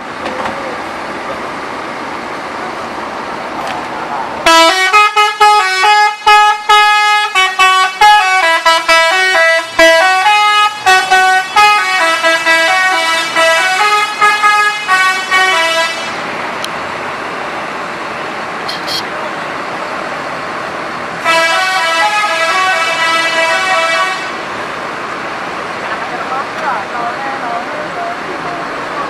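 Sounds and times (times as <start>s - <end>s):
multi-tone bus horn melody: 4.4s - 16.2s, 18.7s - 19.1s, 21.2s - 24.5s.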